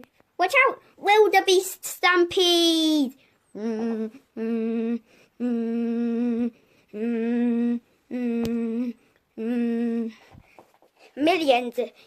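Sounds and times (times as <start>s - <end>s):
child making hummed calls: 3.5s - 10.2s.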